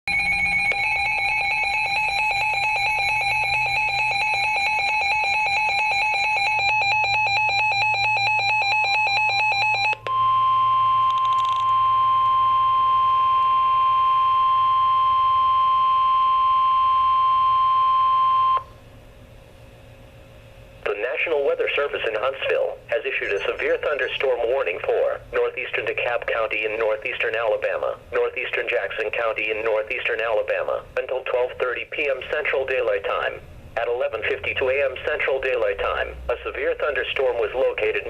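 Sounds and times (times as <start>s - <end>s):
pulsing electronic alarm: 0.1s - 18.7s, 23.0s - 24.4s
steady high alarm tone: 0.1s - 18.7s, 22.9s - 24.7s
faint hum: 0.1s - 38.0s.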